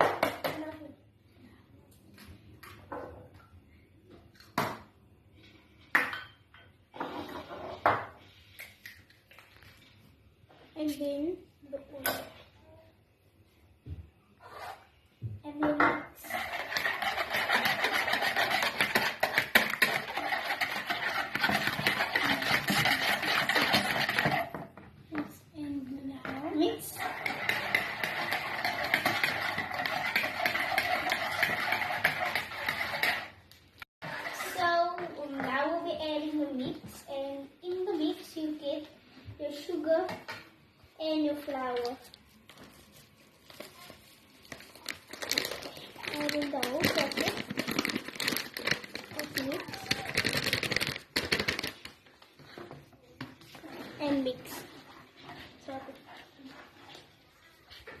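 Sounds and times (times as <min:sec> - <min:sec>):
rustling scrape: 0:16.2 - 0:24.5.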